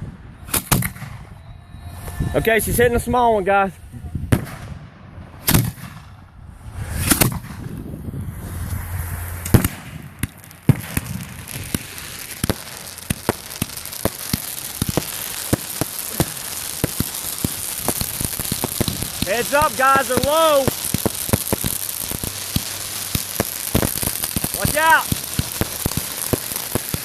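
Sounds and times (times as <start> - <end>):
fireworks crackling pops: 0.0 - 1.4, 4.3 - 6.2, 6.8 - 27.0
fireworks bangs: 0.0 - 2.9, 4.2 - 27.0
steady hiss: 8.8 - 27.0.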